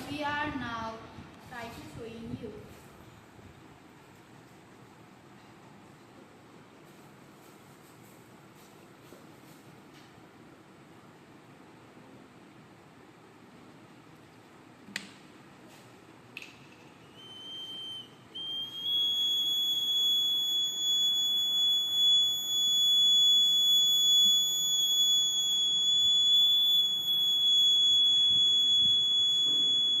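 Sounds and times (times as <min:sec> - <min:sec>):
high-pitched buzzer tone: 0:17.3 - 0:30.0.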